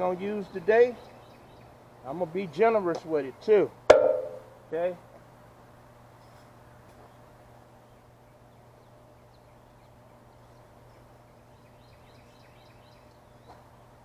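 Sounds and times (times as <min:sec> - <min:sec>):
steady low hum: 0:03.6 - 0:14.0.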